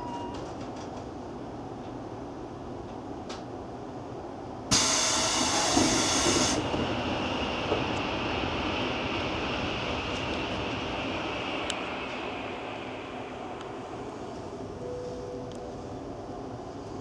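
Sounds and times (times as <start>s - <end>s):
stationary train rumble: 0.0s - 17.0s
train door air hiss: 4.7s - 14.8s.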